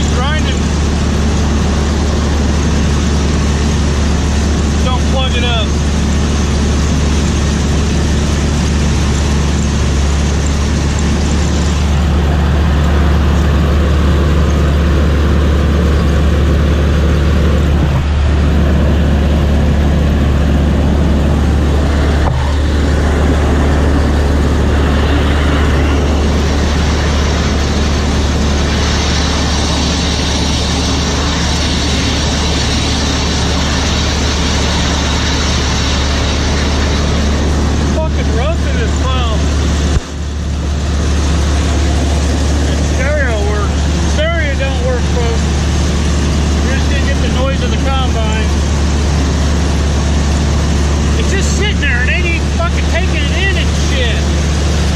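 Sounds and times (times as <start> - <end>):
combine harvester drone: 0.0 - 54.9.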